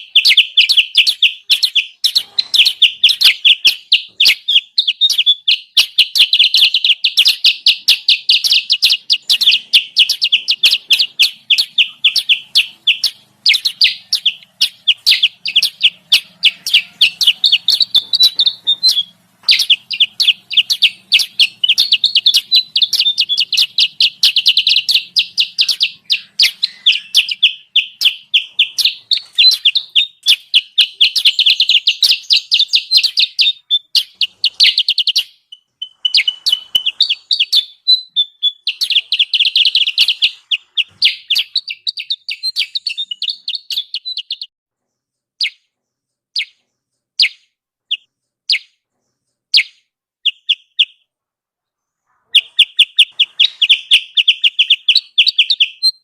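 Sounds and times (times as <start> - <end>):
bird chattering high chirps: 0.0 - 44.5, 46.3 - 51.0, 52.0 - 56.0
steady whistled bird note: 0.0 - 44.5, 52.2 - 56.0.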